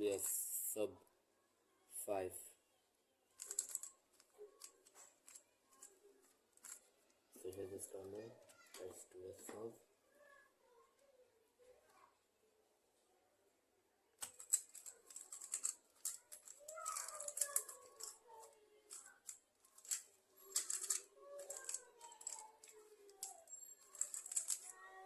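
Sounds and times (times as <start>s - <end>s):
puzzle cube clicking and rattling: 3.4s - 6.0s, 6.6s - 6.9s, 14.2s - 24.9s.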